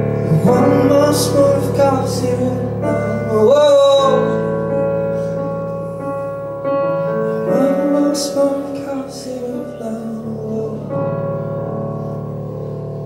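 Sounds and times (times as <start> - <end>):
man singing: 0.0 - 5.0, 7.4 - 11.5
piano chords: 0.0 - 13.0.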